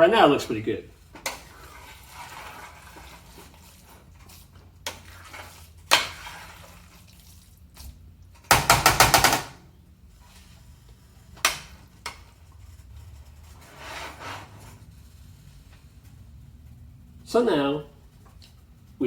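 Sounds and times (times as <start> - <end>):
utensil scraping pan: 1.0 - 7.2, 11.4 - 15.5.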